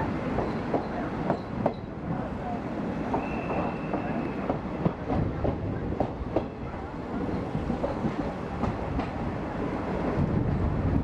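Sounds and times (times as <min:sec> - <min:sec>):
train rumbling on rails: 0:00.0 - 0:11.0
faint high squeal: 0:03.2 - 0:04.4.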